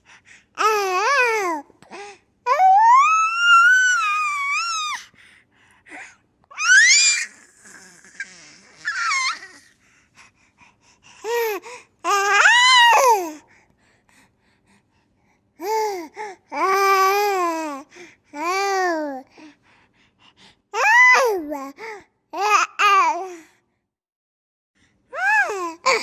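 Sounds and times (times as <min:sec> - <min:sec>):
baby squealing and wailing: 0:02.5 - 0:05.0, 0:06.5 - 0:09.7, 0:12.1 - 0:13.1.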